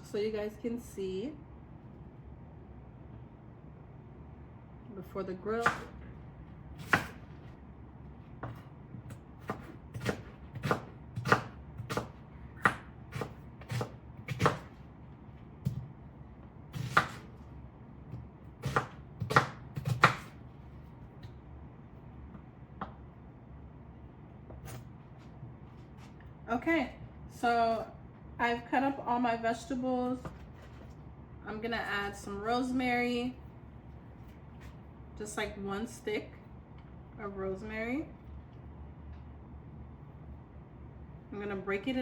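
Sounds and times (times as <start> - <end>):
knife chopping on cutting board: 5.6 - 6.0, 6.8 - 7.4, 8.4 - 14.8, 16.8 - 17.4, 18.1 - 20.4.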